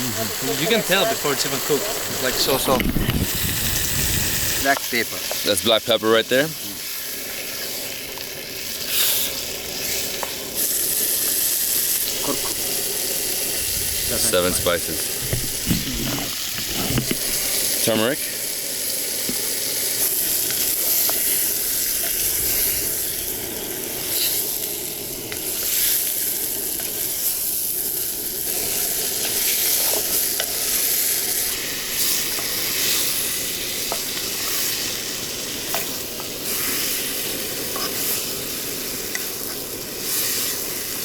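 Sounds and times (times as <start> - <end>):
meat sizzling in a pot: 0.0 - 41.0
utensil scraping pot: 15.2 - 17.6, 35.7 - 38.4.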